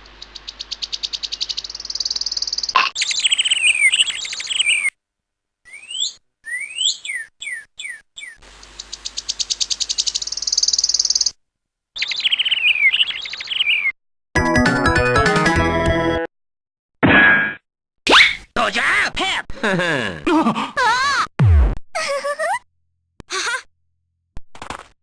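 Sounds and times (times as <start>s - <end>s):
bird chirping and trilling: 0.1s - 4.9s, 5.7s - 11.4s, 12.0s - 14.0s.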